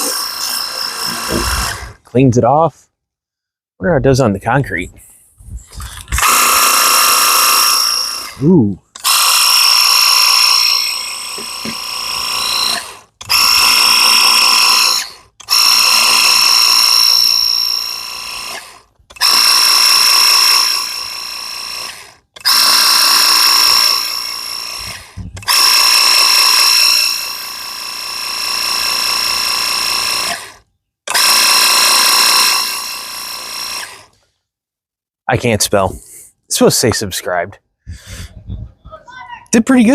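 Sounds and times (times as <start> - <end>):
pressure washer pump whining: 0.0 - 2.1, 5.8 - 34.2.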